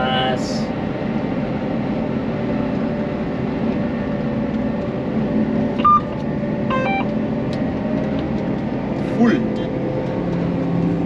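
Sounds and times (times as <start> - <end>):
short electronic beep: 5.8 - 7.1
stepped beeps: 5.8 - 7.1.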